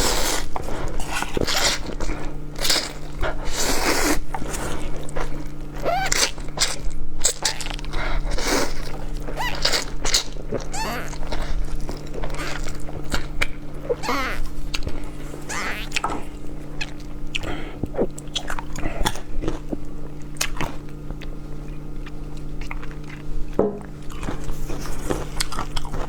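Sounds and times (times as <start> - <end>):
slurping noodles: 0.0 - 4.9, 7.2 - 12.8, 14.0 - 16.2
chewing and mouth noises: 0.0 - 26.0.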